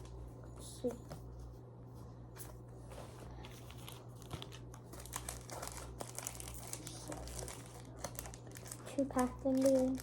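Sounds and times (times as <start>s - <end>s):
plastic wrappers crinkling: 3.6s - 10.0s.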